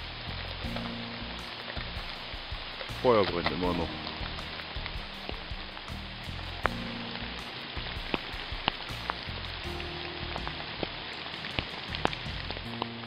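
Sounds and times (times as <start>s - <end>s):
campfire crackling: 0.0s - 13.0s
rain falling: 0.0s - 13.0s.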